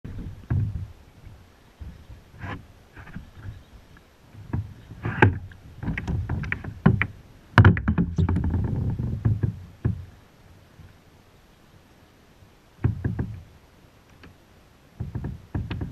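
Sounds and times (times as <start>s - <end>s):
knocks and clatter on kayak: 0.1s - 3.7s, 4.3s - 10.1s, 12.8s - 13.5s, 15.0s - 15.9s.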